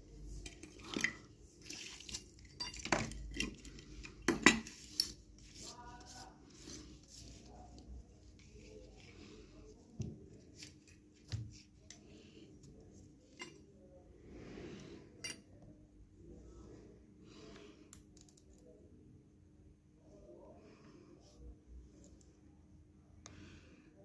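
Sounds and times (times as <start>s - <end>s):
soft rustling: 3.8s - 13.4s.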